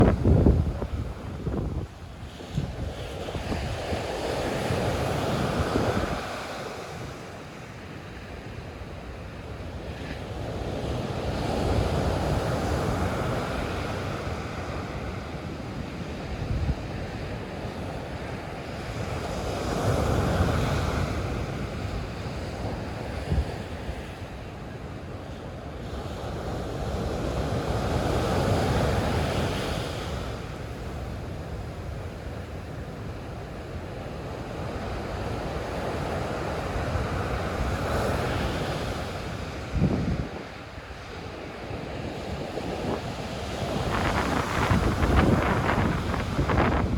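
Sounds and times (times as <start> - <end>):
wind buffeting microphone: 0.0 - 7.0, 10.5 - 18.4, 38.6 - 46.9
sea waves breaking on shore: 0.0 - 46.9.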